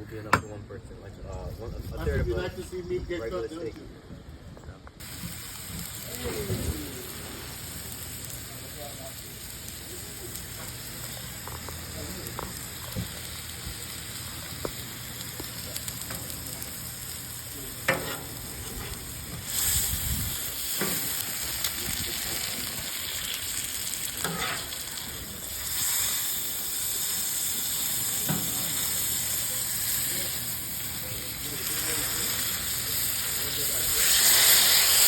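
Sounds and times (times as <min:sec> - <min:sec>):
steak sizzling: 0:05.0 - 0:35.0.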